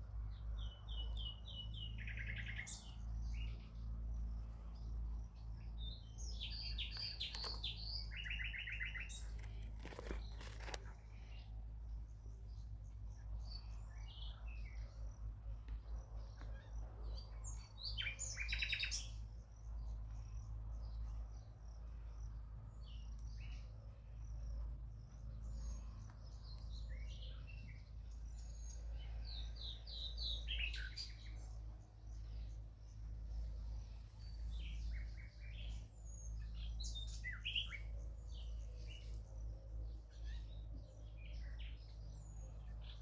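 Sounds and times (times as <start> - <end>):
nightingale singing: 0.4 - 43.0
steady low hum: 10.8 - 43.0.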